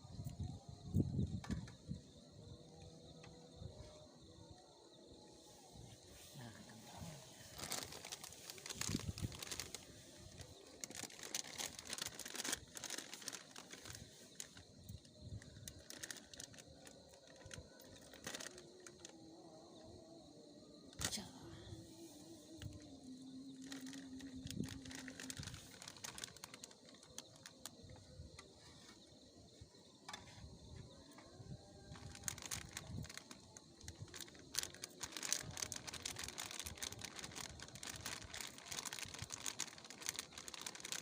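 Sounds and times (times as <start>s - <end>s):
packaging crinkling and rustling: 6.7s - 19.2s, 22.6s - 29.0s, 31.8s - 41.0s.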